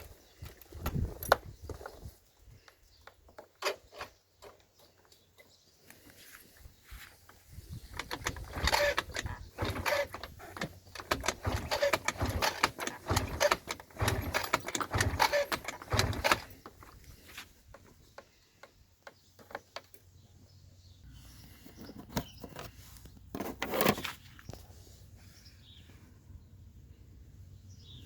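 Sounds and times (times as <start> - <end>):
scooter engine cranking: 7.7 - 20.0.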